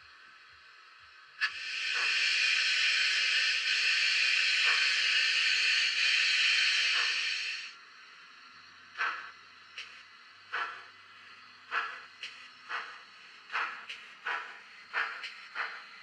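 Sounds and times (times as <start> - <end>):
model locomotive steam hiss: 0.0 - 16.0
short exhaust puffs: 1.4 - 7.7.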